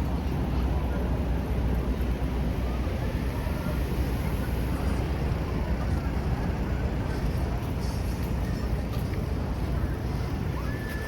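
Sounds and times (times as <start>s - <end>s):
city street noise: 0.0s - 11.0s
wind buffeting microphone: 0.0s - 11.0s.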